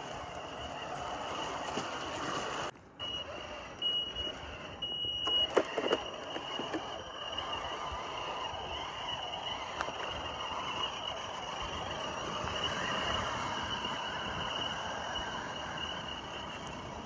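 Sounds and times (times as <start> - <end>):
high-pitched motor whine: 0.0 - 17.0
toy truck knocking over rocks: 5.2 - 7.1.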